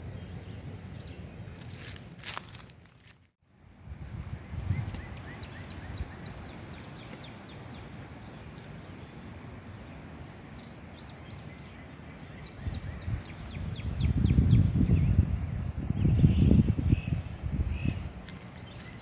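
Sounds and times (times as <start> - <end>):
songbird chirping: 0.0 - 2.7, 4.0 - 19.0
steady outdoor hiss: 0.0 - 19.0.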